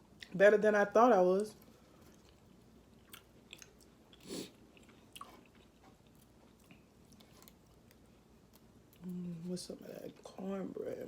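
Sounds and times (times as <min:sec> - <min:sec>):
person chewing: 0:01.6 - 0:09.1.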